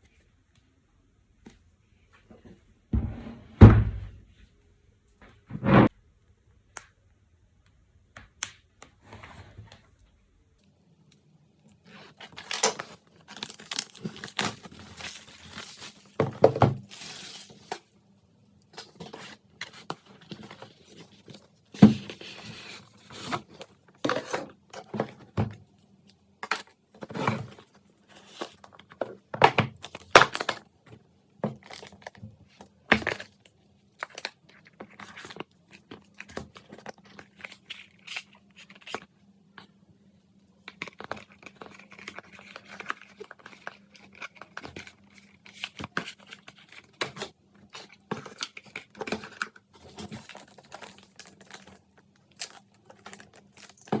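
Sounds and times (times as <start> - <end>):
wrapping tearing and crinkling: 11.9 - 16.2, 40.7 - 54.0.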